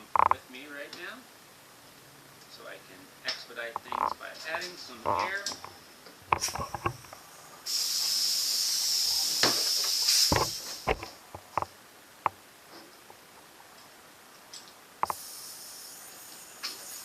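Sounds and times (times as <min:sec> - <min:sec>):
compressed air hissing: 0:04.5 - 0:11.2, 0:15.0 - 0:17.0.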